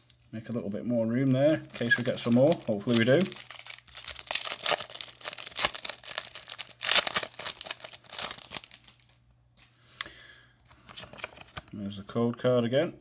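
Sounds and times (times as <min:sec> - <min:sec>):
foil card pack tearing and crinkling: 0:01.5 - 0:09.2.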